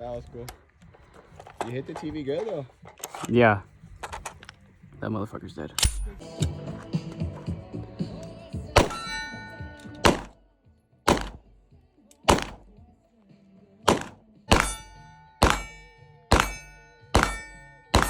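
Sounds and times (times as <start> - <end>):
gunshots: 8.8 - 9.4, 10.0 - 10.4, 11.1 - 11.5, 12.3 - 12.7, 13.9 - 18.0
lingering ringing tone: 8.8 - 10.0, 14.5 - 18.0.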